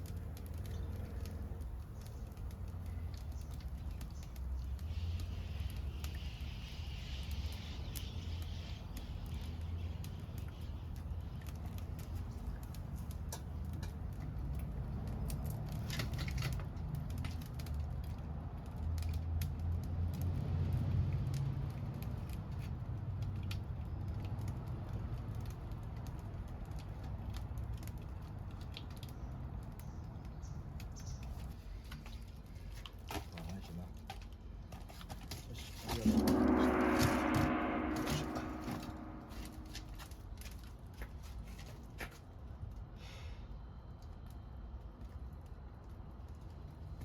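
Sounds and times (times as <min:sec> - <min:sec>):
sharp pops from fire: 0:00.0 - 0:33.3
bonfire crackling: 0:00.0 - 0:34.8, 0:39.0 - 0:47.0
low rumble of burning fire: 0:00.0 - 0:47.0.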